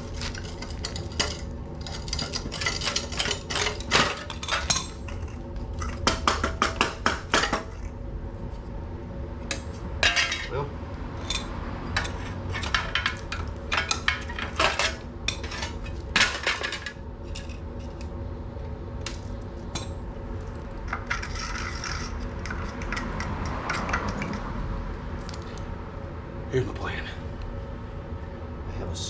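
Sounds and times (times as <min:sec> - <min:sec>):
metal tools clinking and scraping: 0:00.0 - 0:06.0, 0:09.5 - 0:18.1, 0:20.9 - 0:24.5
low steady hum: 0:00.0 - 0:29.0.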